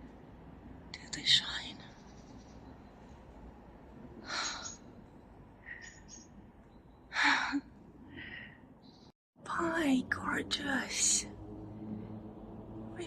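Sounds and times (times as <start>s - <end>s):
faint breaths: 4.1s - 6.4s, 7.1s - 9.0s.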